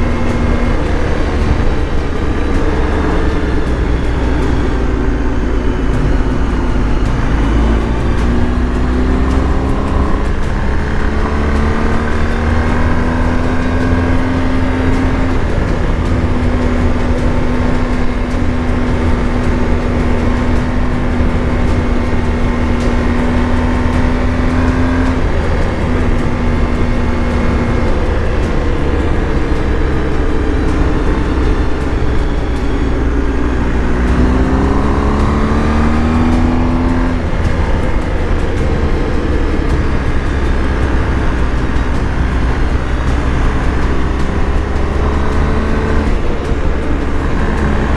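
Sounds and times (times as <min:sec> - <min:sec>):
low rumble: 0:00.0 - 0:47.9
motorcycle engine accelerating: 0:00.0 - 0:47.9.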